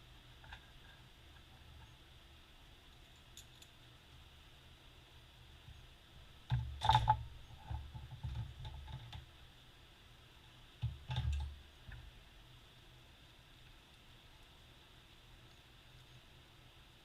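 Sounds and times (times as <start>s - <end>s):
small metal parts clicking: 2.9s - 3.8s.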